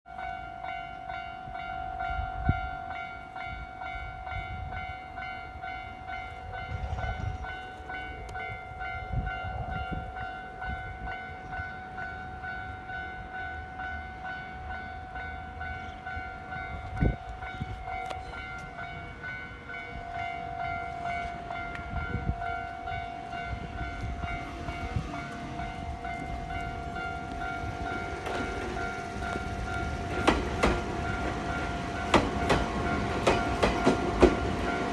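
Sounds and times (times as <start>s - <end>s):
train rumbling: 0.6s - 34.9s
train wheel thumps: 27.7s - 34.9s.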